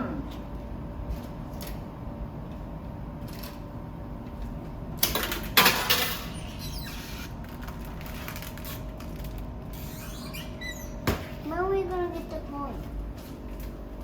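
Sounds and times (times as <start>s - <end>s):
coins clattering into vending machine: 5.0s - 6.4s.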